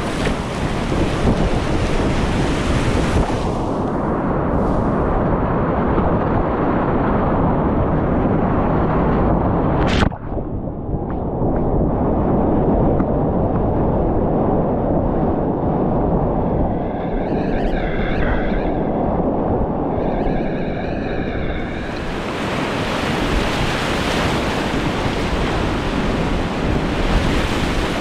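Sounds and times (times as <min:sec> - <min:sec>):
rapids roaring: 0:19.8 - 0:28.0.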